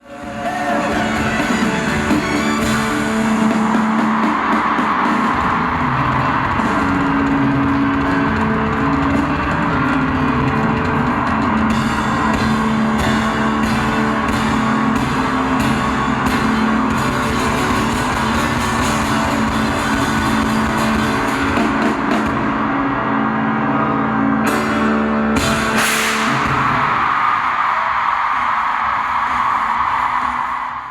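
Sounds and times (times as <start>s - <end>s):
rock band music: 0.0s - 27.6s
sharp cymbal hits: 25.4s - 27.4s.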